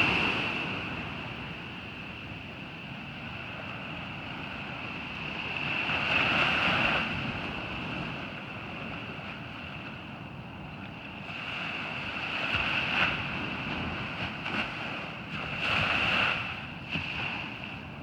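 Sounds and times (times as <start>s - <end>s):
ocean surf breaking: 0.0s - 2.4s.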